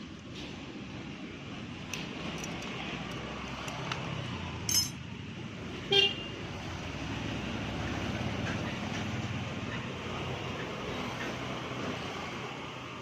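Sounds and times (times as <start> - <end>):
road traffic hum: 0.0 - 13.0
light metallic clink: 4.7 - 5.0.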